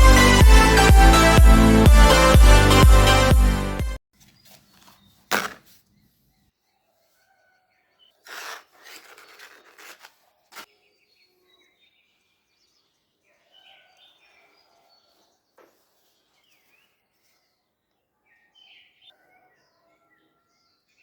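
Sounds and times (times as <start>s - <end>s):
rubbing or scraping: 4.2s - 6.3s, 8.2s - 10.7s.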